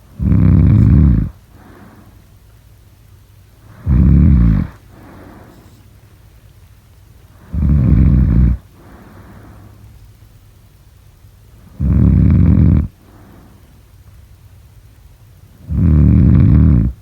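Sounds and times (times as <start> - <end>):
soft breath: 0.0 - 2.4, 3.6 - 6.2, 7.3 - 10.2, 12.8 - 14.2
person snoring: 0.2 - 2.0, 3.7 - 5.7, 7.4 - 9.6, 11.7 - 13.3, 15.6 - 17.0.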